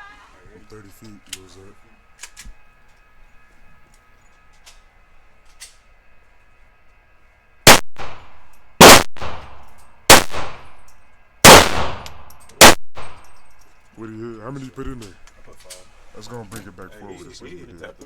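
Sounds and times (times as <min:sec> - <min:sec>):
gunshots with echo: 0:07.7 - 0:10.8, 0:11.5 - 0:13.4.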